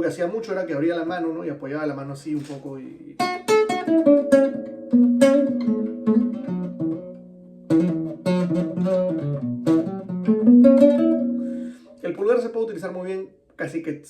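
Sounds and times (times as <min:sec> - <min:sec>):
plucked guitar melody: 0:02.4 - 0:12.5.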